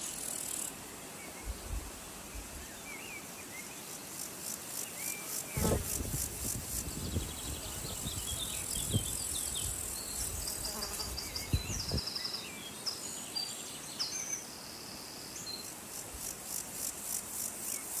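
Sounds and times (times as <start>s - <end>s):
crickets chirping: 0.0s - 18.0s.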